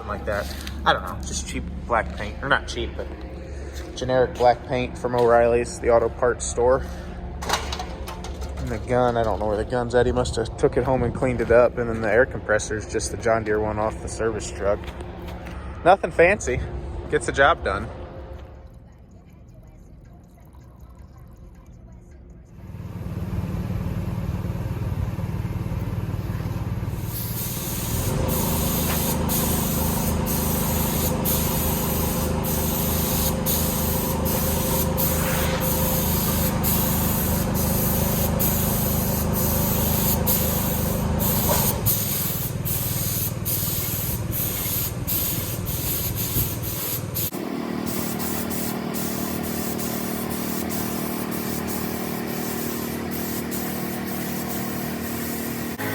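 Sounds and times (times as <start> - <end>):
air compressor humming: 0.0 - 18.6, 22.6 - 55.9
paint spray gun hissing: 26.8 - 55.9.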